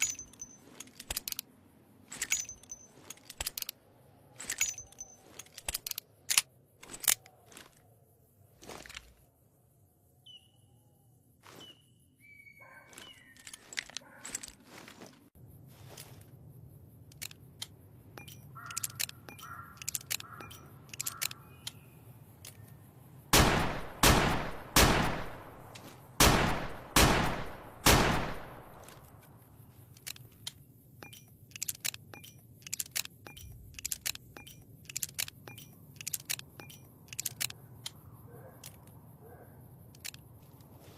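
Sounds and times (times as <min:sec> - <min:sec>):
metallic clicks: 0:00.0 - 0:07.9, 0:17.0 - 0:22.9, 0:26.5 - 0:39.2, 0:39.8 - 0:40.8.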